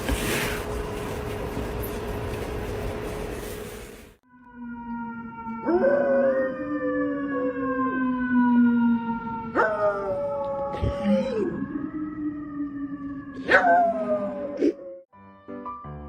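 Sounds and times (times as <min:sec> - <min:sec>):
dog howling: 0:05.6 - 0:07.6, 0:09.5 - 0:11.7, 0:13.4 - 0:15.0.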